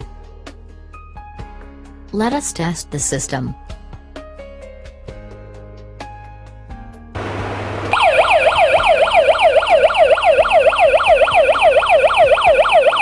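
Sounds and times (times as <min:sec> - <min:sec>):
alarm siren sweeping: 0:07.2 - 0:13.0.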